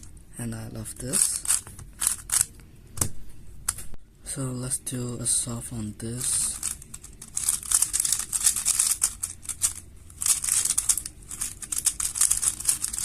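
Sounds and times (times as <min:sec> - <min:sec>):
speed cube rattling clicks: 0:01.2 - 0:02.5, 0:06.5 - 0:13.0.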